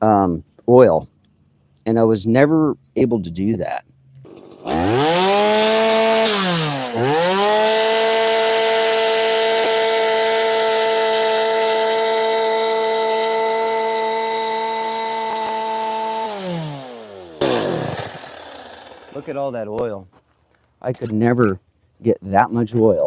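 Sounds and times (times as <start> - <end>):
chainsaw revving: 4.2 - 19.6.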